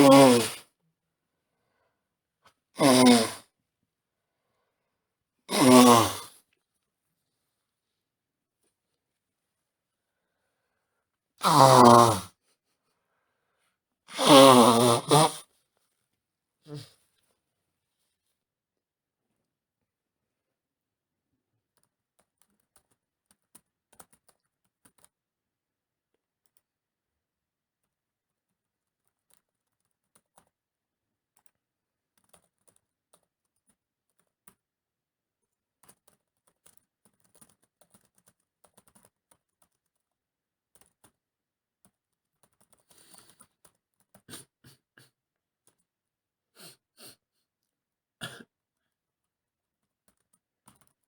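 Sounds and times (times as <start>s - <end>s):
computer keyboard typing: 36.0s - 39.8s.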